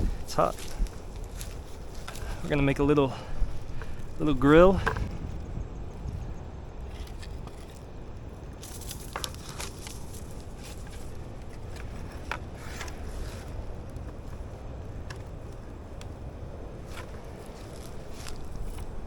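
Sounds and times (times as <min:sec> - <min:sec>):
campfire crackling snaps: 0:00.0 - 0:19.0
low fire rumble: 0:00.0 - 0:19.0.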